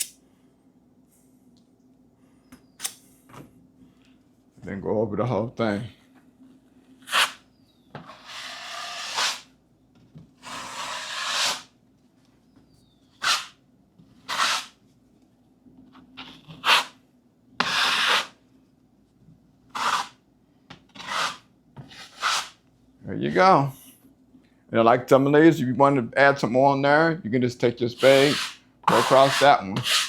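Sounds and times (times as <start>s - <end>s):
drywall knife scraping compound: 7.0s - 7.4s, 8.0s - 9.5s, 10.4s - 11.8s, 13.2s - 13.6s, 14.2s - 14.8s, 16.2s - 17.0s, 17.6s - 18.4s, 19.7s - 20.2s, 20.9s - 22.6s, 28.0s - 30.0s.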